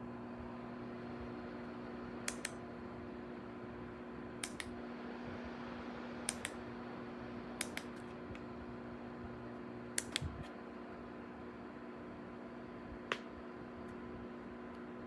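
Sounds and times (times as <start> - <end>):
tower fan humming: 0.0 - 15.0
short sharp clicks: 4.4 - 4.7.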